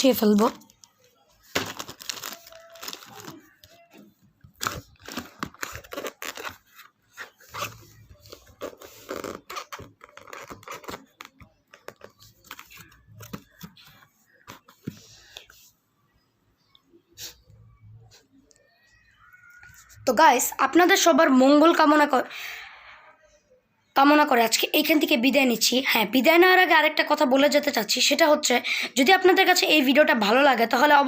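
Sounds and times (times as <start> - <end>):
plastic packets and cardboard rustling: 0.2 - 15.0.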